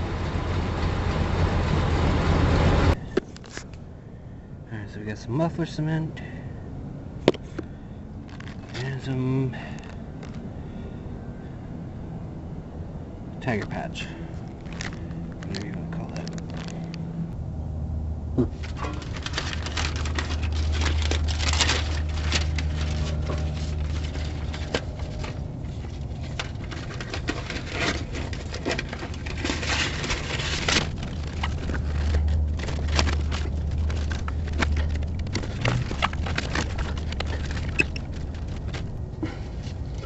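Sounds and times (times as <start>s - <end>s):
low steady hum: 0.0s - 40.0s
hands rustling and scraping materials: 8.3s - 10.5s, 13.4s - 17.0s, 18.4s - 40.0s.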